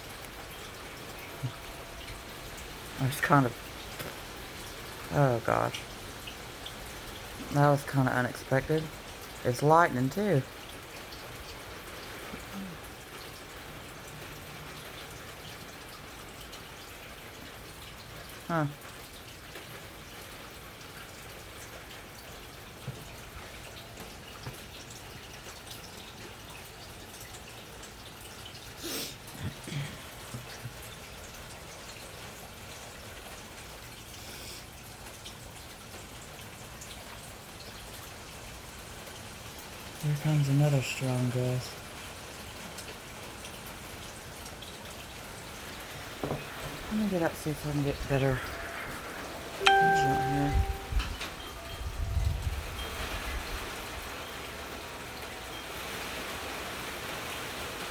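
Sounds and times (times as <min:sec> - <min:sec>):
water drips clicking: 0:00.0 - 0:40.4, 0:47.8 - 0:51.8
steady rain: 0:00.0 - 0:57.9
wind: 0:00.0 - 0:57.9.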